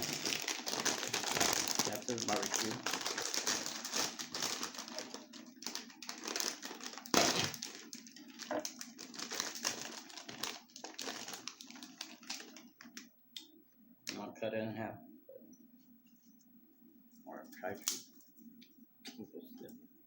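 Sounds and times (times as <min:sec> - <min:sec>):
plastic snack bag crinkling: 0:00.0 - 0:13.1.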